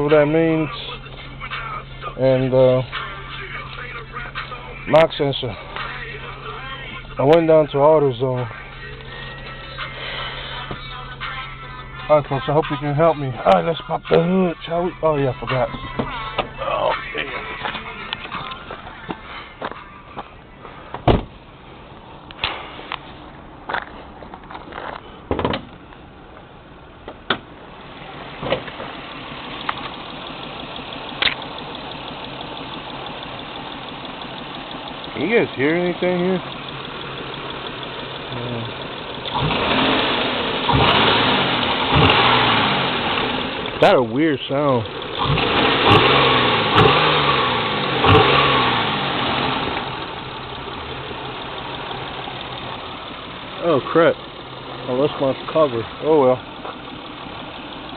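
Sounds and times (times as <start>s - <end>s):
car engine idling: 0.0s - 57.9s
sharp knocks and clunks: 20.9s - 21.3s, 25.3s - 25.7s
sharp clicks: 31.2s - 31.9s.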